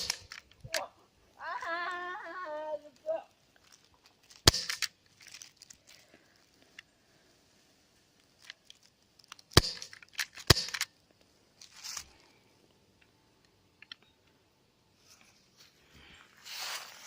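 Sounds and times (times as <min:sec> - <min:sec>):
airsoft gun shots: 0:00.0 - 0:00.3, 0:04.5 - 0:04.8, 0:09.6 - 0:09.9, 0:10.5 - 0:10.8
brief rustle: 0:11.6 - 0:12.3.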